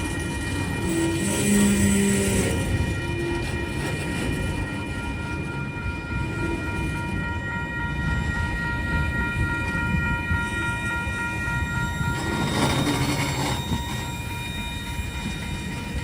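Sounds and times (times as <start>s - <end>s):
high-pitched wheel squeal: 0.0s - 7.2s, 10.4s - 16.0s
freight train rumbling: 0.0s - 16.0s.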